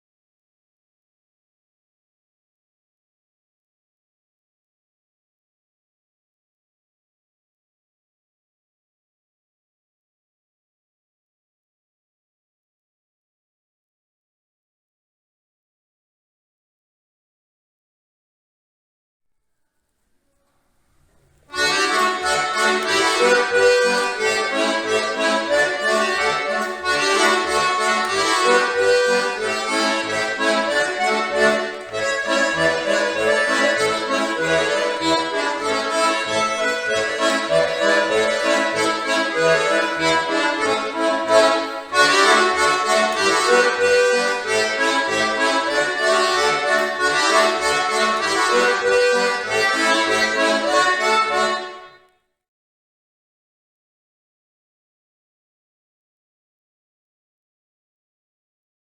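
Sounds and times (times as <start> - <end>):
accordion tune with bass notes: 21.4 - 52.1.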